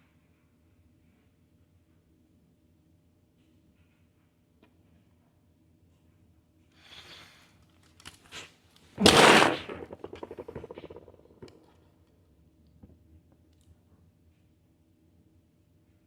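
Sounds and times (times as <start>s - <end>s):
plastic pieces clattering: 9.0s - 11.5s.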